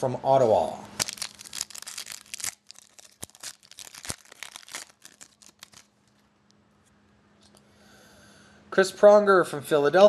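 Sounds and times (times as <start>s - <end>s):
trading cards flipping: 1.0s - 6.2s.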